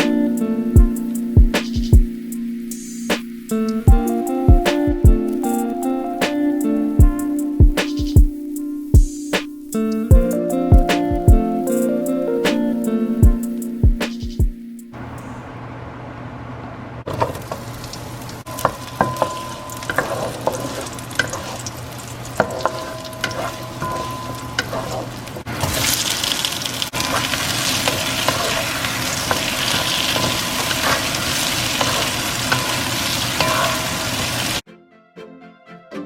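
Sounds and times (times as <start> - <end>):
food sizzling in hot oil: 17.7 - 24.6, 25.2 - 34.6
metal utensil scraping pan: 18.6 - 21.7, 22.4 - 25.1.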